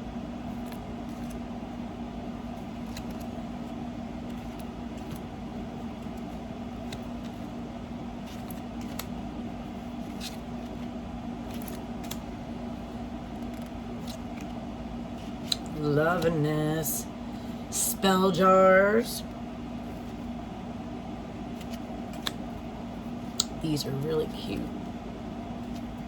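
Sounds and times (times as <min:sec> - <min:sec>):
room hum with low tone: 0:00.0 - 0:26.0
cards clicking and tapping: 0:02.6 - 0:03.4, 0:08.3 - 0:09.2, 0:21.6 - 0:22.5.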